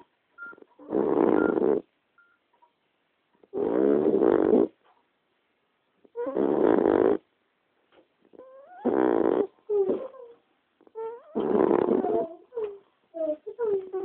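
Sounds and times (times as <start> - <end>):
small dog snoring: 0.4 - 1.9, 3.5 - 4.8, 6.1 - 7.3, 8.3 - 14.0.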